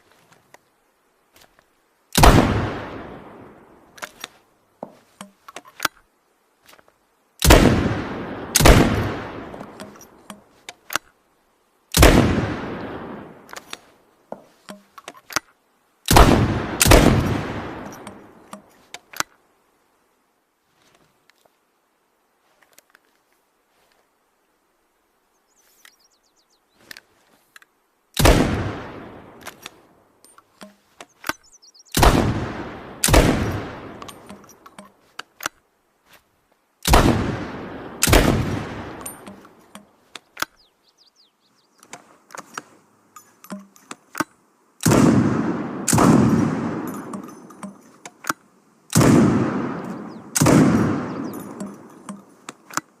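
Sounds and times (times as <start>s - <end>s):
sharp shotgun-like bangs: 2.2s - 3.2s, 7.4s - 9.9s, 11.9s - 13.4s, 16.1s - 18.2s, 28.2s - 29.4s, 32.0s - 34.4s, 36.8s - 39.4s, 44.8s - 47.3s, 48.9s - 51.9s.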